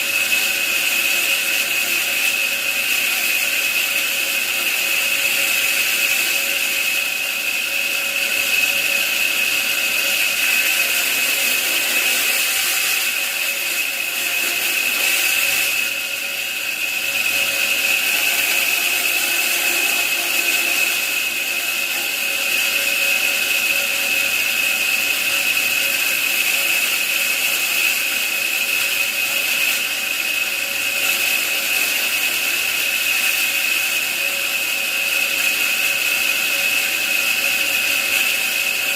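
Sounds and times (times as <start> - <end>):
woodworking power tool whining: 0.0 - 38.9.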